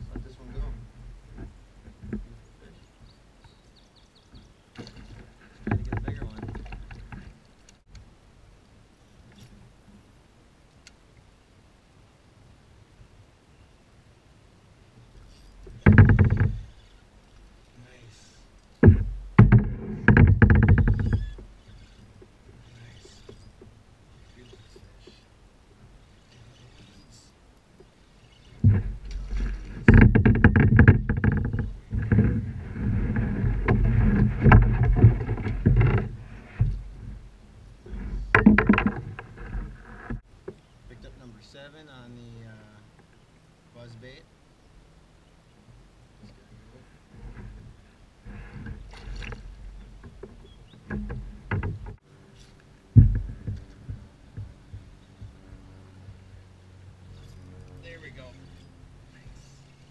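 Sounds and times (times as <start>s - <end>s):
knocks against a kayak: 4.7s - 7.3s, 15.7s - 16.6s, 18.8s - 21.2s, 28.6s - 32.4s, 38.2s - 40.2s, 52.9s - 55.4s.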